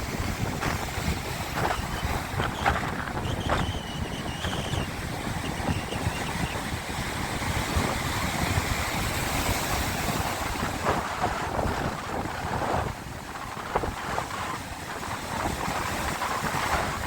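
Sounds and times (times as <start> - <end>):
sea waves splashing: 0.0 - 17.0
wind buffeting microphone: 0.0 - 17.0.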